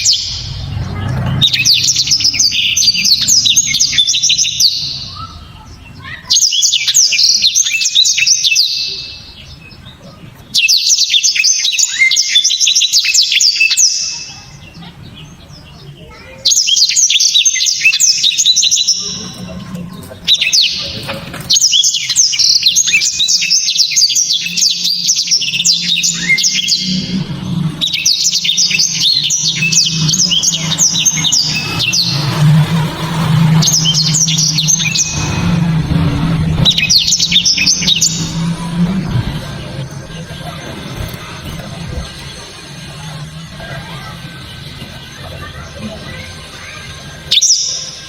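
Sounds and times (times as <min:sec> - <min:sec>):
bird singing twittering runs: 0:00.0 - 0:48.0.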